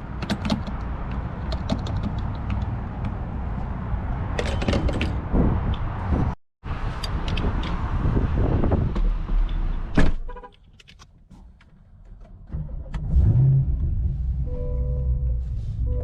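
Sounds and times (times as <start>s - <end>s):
handling noise and clicks: 0.2s - 3.2s, 10.4s - 12.5s.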